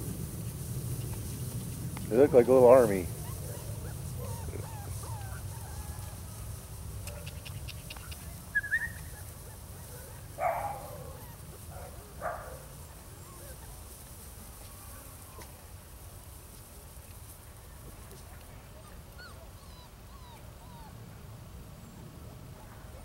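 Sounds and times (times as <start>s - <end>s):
low outdoor rumble: 0.0s - 23.0s
puppies yipping and whimpering: 2.2s - 6.6s, 7.2s - 11.8s, 12.7s - 14.0s, 18.8s - 21.0s.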